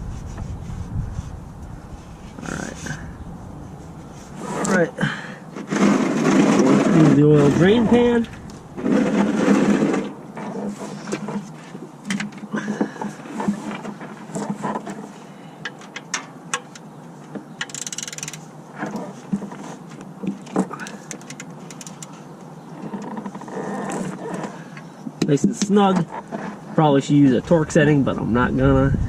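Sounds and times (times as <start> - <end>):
wrench clicks and metal knocks: 17.6 - 18.4.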